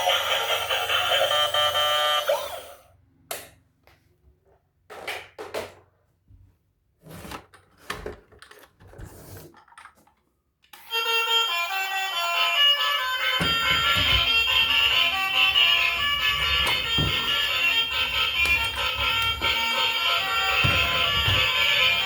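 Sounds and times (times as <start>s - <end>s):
background music: 11.2s - 22.0s.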